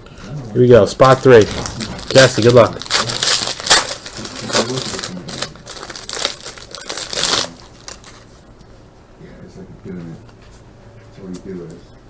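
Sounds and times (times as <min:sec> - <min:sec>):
wrapper crinkling and tearing: 0:01.0 - 0:08.3.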